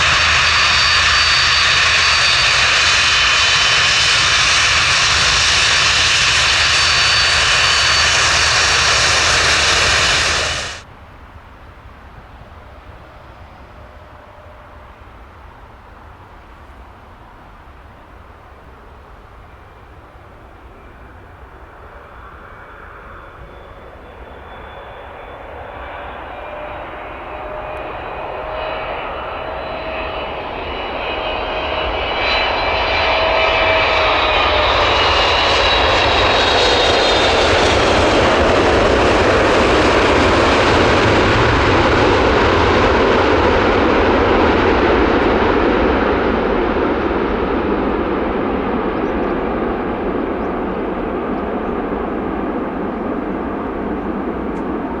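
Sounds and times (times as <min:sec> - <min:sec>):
jet airliner engines roaring: 0:00.0 - 0:55.0.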